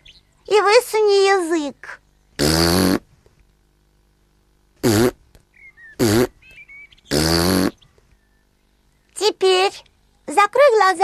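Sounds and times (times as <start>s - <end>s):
cartoon piglet hiccupping: 2.4s - 3.0s, 4.8s - 5.2s, 6.0s - 6.4s, 7.1s - 7.8s.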